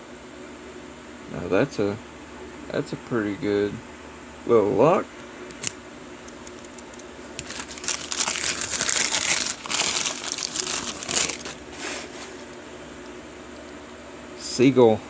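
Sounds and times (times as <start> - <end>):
packaging crinkling: 6.6 - 12.6.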